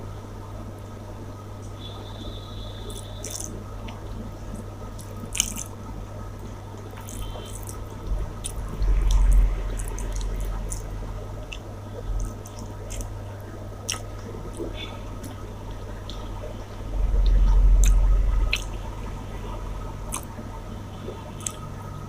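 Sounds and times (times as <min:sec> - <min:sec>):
steady low hum: 0:00.0 - 0:22.0
wet chewing: 0:02.8 - 0:16.4, 0:17.2 - 0:18.8, 0:20.0 - 0:20.4, 0:21.0 - 0:21.6.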